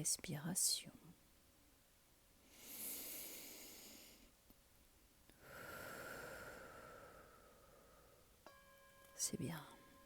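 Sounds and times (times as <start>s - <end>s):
quiet breathing: 2.4s - 4.5s, 5.3s - 8.6s.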